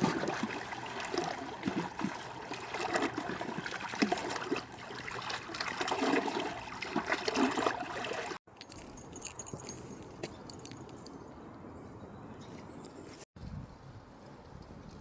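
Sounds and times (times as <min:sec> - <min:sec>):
stream trickling over rocks: 0:00.0 - 0:08.4.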